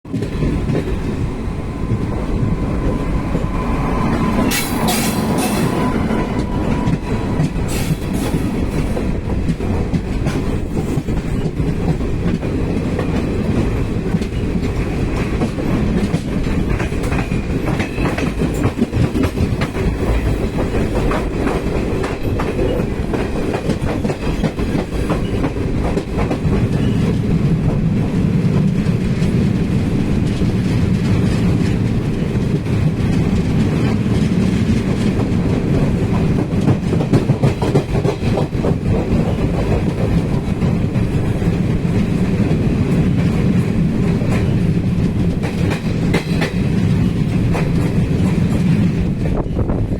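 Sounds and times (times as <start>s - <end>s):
train wheels clattering over rail joints: 0.1s - 49.9s.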